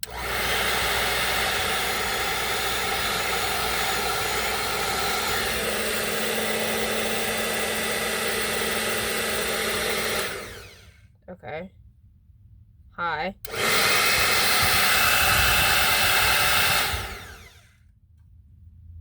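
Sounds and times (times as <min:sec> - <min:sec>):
hair dryer running: 0:00.0 - 0:11.0, 0:13.4 - 0:17.7
hair dryer spinning down: 0:00.0 - 0:11.0, 0:13.5 - 0:17.7.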